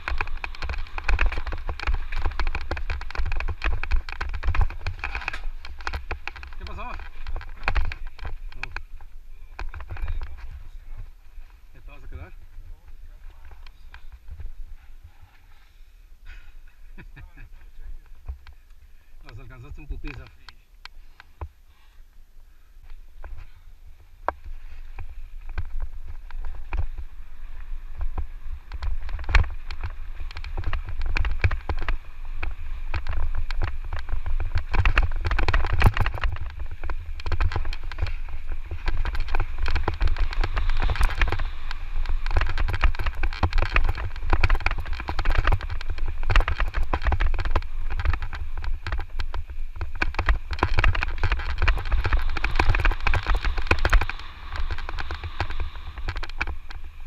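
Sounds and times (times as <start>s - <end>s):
tyre crunch: 0.0s - 12.3s, 24.2s - 57.0s
wind buffeting microphone: 0.0s - 15.4s, 23.0s - 57.0s
bike rattling over rough trail: 0.0s - 21.6s, 22.5s - 57.0s.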